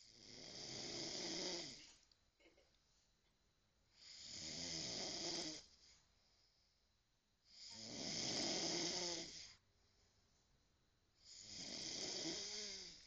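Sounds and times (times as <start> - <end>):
man snoring: 0.0 - 1.8, 4.0 - 5.7, 7.5 - 9.6, 11.2 - 13.0.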